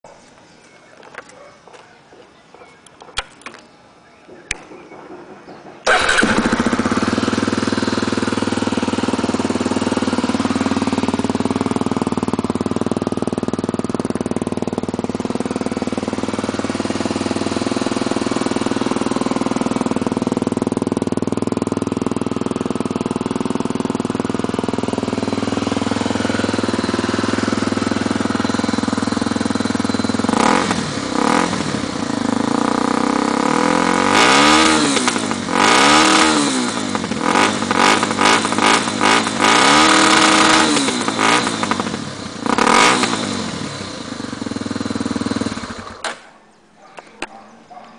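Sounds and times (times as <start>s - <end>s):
motorcycle engine idling and revving: 0.0s - 47.9s.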